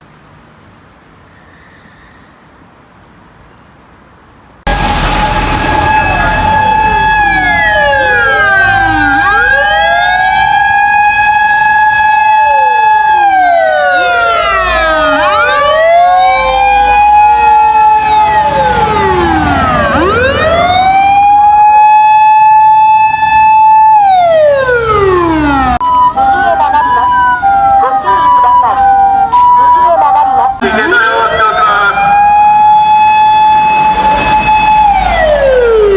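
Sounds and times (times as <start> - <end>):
low engine rumble: 4.7 - 10.3
motor sirens wailing: 4.7 - 35.9.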